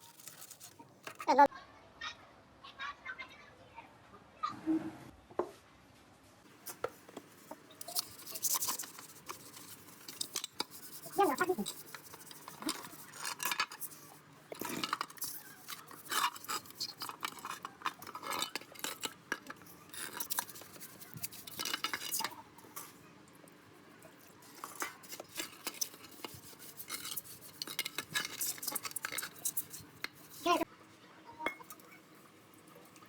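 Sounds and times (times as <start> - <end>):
metal tools clinking and scraping: 0.0 - 1.4, 7.6 - 23.0, 24.4 - 30.7.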